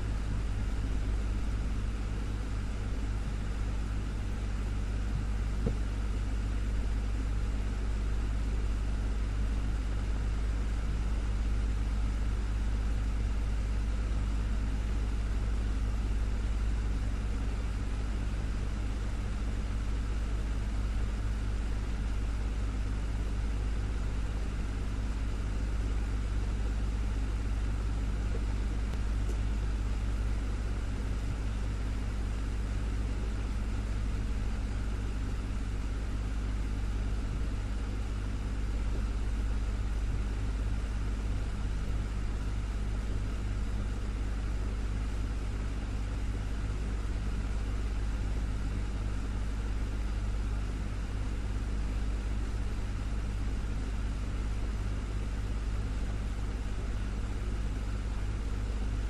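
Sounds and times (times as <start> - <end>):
desktop fan running: 0.0 - 59.0.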